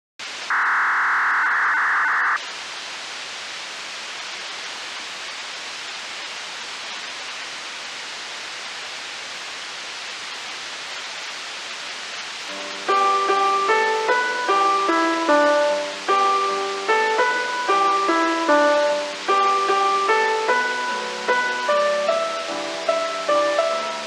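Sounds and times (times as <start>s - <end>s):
radio hiss: 0.2s - 3.2s
loud buzzing signal tone: 0.5s - 2.4s.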